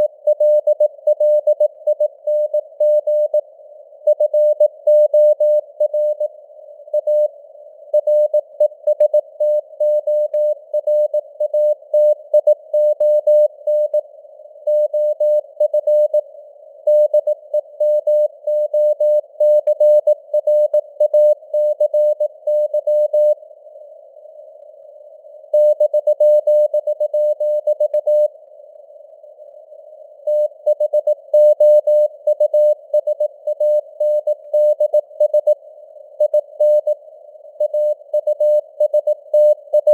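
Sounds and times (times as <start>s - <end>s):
morse code tone: 37.6s - 39.9s.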